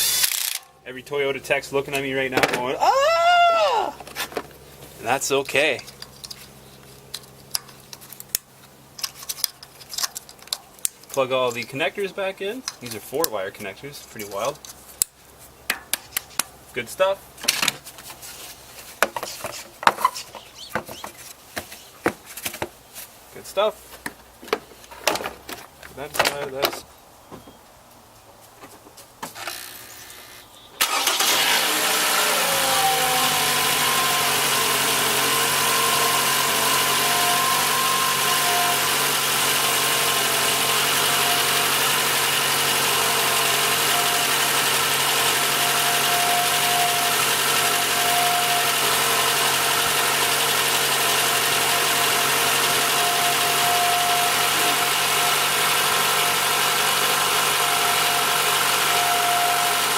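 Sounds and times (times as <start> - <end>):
car engine idling: 30.8 - 59.9
engine starter cranking: 30.8 - 59.9.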